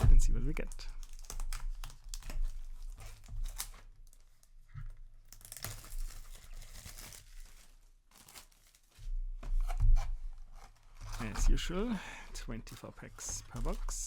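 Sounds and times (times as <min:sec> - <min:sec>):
packaging tearing and crinkling: 0:00.6 - 0:09.0.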